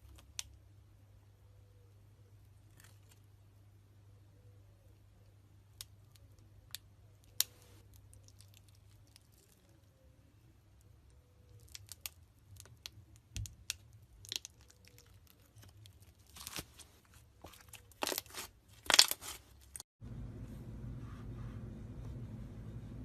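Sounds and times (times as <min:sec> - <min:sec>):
slime crackling and popping: 0:11.5 - 0:16.8, 0:17.5 - 0:19.8
steady low hum: 0:20.0 - 0:23.0.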